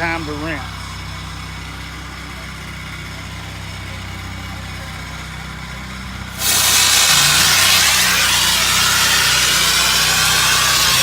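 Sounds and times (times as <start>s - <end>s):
pressure washer engine running: 0.0s - 11.0s
high-pressure water spray hiss: 6.3s - 11.0s.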